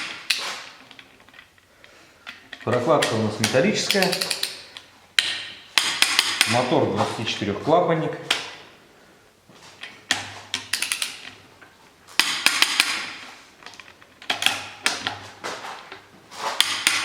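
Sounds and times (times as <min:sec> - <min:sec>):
ratchet wrench clicking: 0:03.9 - 0:04.8.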